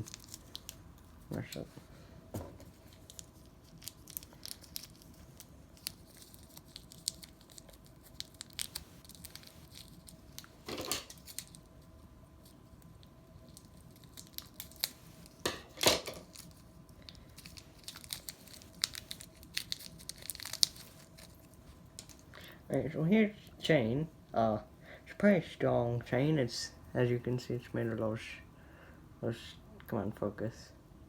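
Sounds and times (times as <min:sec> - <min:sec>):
packaging clicks and crinkles: 0:00.0 - 0:01.6, 0:02.7 - 0:11.8, 0:12.8 - 0:22.3
loud packaging rustles: 0:02.6 - 0:11.7, 0:13.5 - 0:22.2.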